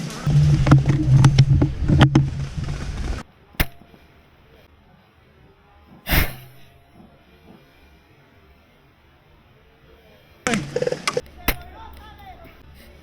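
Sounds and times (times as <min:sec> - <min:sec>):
loud noise: 0:00.0 - 0:03.2.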